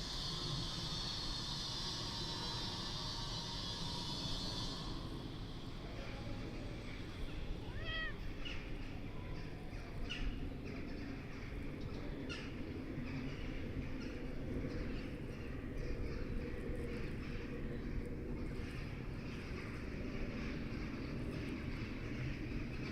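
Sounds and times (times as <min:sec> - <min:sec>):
cat meowing softly: 0:07.6 - 0:08.6.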